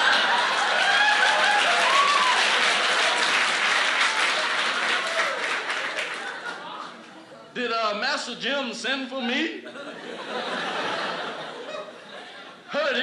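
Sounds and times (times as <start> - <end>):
audience applauding: 0.0 - 6.8.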